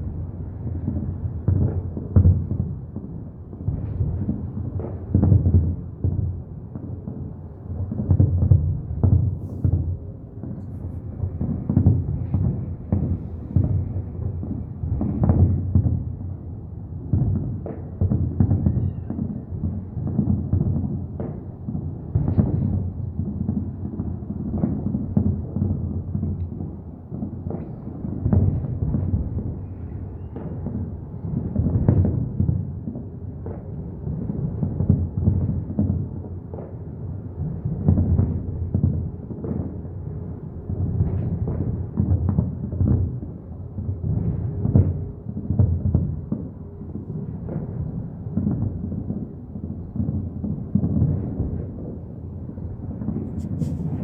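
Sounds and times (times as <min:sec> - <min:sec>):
fireworks booming: 0:06.8 - 0:16.2, 0:44.0 - 0:54.0.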